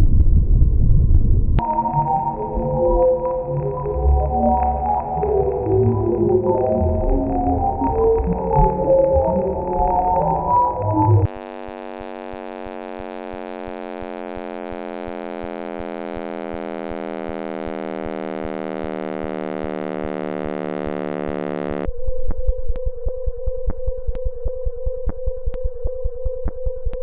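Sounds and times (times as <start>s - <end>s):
steady hum with sharp ticks: 2.5s - 27.0s
buzzy electronic tone falling: 5.6s - 27.0s
rapid clicks: 21.8s - 27.0s.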